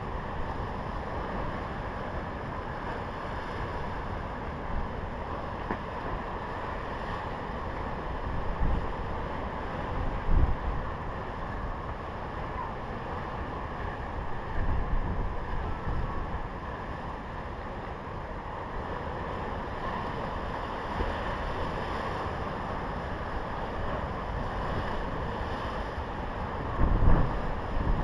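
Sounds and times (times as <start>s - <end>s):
sea waves breaking against rock: 17.7s - 28.0s
wind buffeting microphone: 26.0s - 28.0s.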